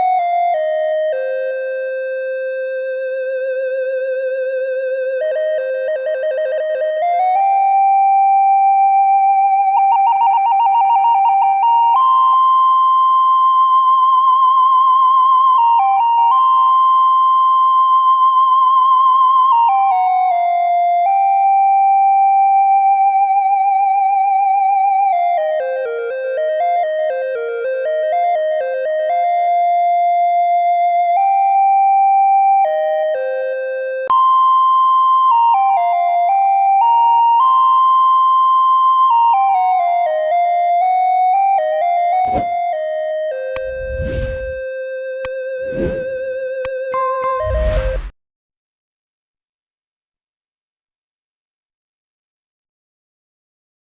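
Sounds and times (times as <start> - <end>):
keyboard melody: 0.0 - 2.8, 46.9 - 48.1.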